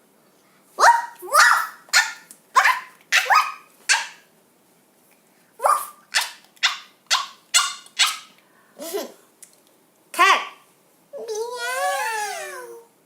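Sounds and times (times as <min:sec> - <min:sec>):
child imitating dog barks: 0:00.8 - 0:03.6, 0:05.6 - 0:06.3, 0:11.2 - 0:12.9.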